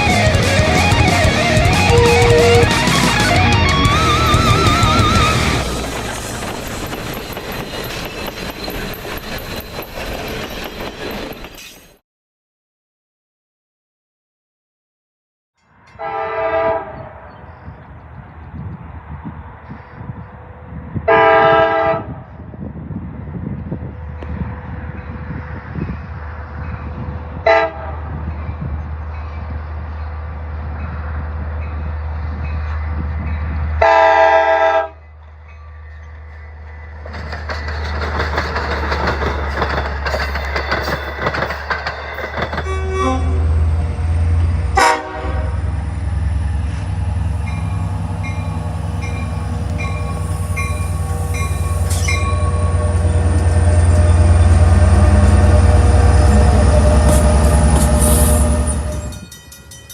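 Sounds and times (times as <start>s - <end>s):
rumble of passing train: 0.0s - 12.0s, 15.6s - 59.9s
locomotive horn blasts: 1.7s - 2.9s, 16.0s - 17.3s, 21.1s - 22.3s, 27.4s - 28.1s, 33.8s - 35.0s, 42.6s - 43.7s, 44.7s - 45.8s
bell dinging: 58.8s - 59.9s.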